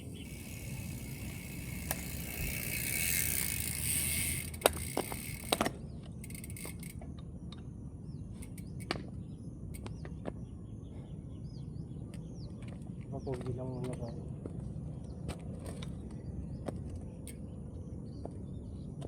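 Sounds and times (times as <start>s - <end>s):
bicycle freewheel buzzing: 0.0s - 7.0s
sharp freewheel clicks: 0.0s - 7.0s
birds chirping: 0.0s - 19.0s.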